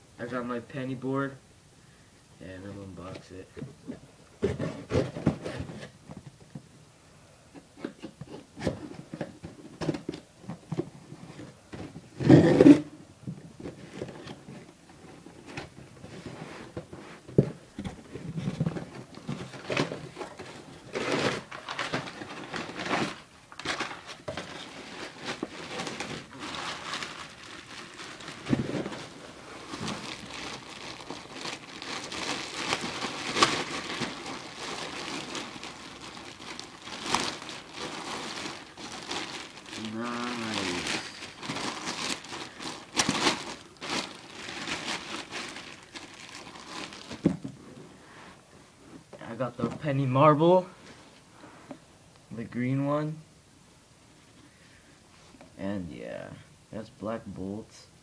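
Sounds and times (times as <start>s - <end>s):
cardboard packaging rustling: 7.8s - 48.4s.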